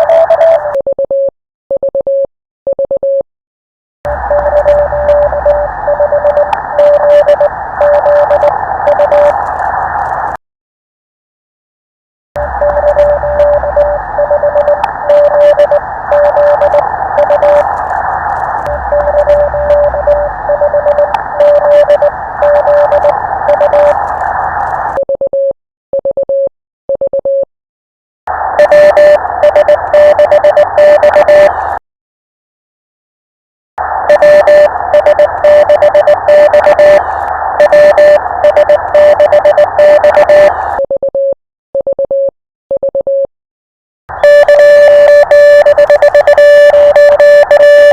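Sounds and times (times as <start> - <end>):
morse code tone: 0.0 - 3.2, 4.1 - 9.4, 12.4 - 24.1, 28.6 - 31.5, 34.1 - 37.0, 37.6 - 43.3, 44.1 - 47.9
radio receiver hiss: 4.1 - 10.4, 12.4 - 25.0, 33.8 - 40.8
static crackles: 4.1 - 10.4, 12.4 - 25.0, 28.3 - 31.8, 33.8 - 40.8, 44.1 - 47.9.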